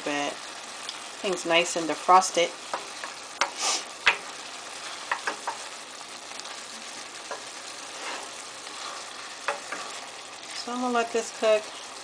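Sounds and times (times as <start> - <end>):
fish and vegetables sizzling in oil: 0.0 - 12.0.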